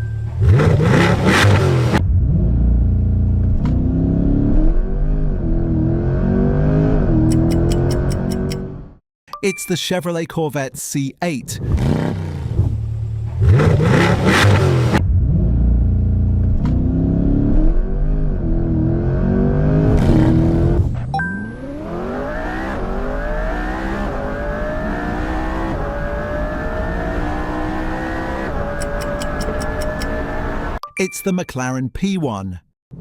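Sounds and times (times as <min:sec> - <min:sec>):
car accelerating hard: 0:00.4 - 0:02.8, 0:11.6 - 0:21.0, 0:21.6 - 0:30.8
car engine revving: 0:00.4 - 0:08.7, 0:11.6 - 0:30.8.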